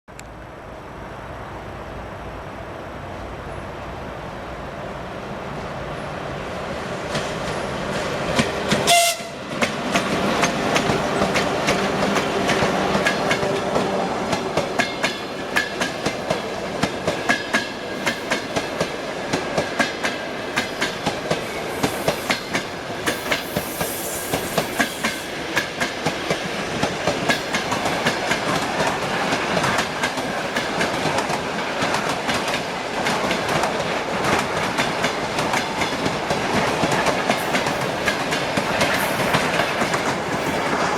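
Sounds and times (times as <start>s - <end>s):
electric locomotive rumbling: 0.2s - 40.9s
wheels clacking over rail joints: 7.0s - 40.9s
train horn blast: 8.8s - 9.5s.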